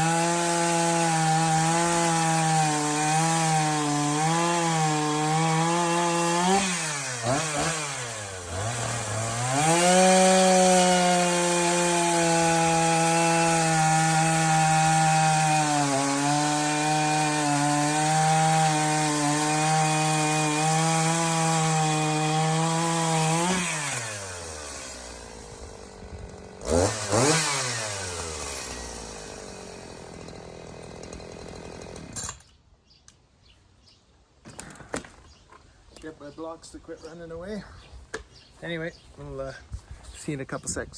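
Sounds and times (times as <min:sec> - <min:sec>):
chainsaw cutting a log: 0:00.0 - 0:32.5.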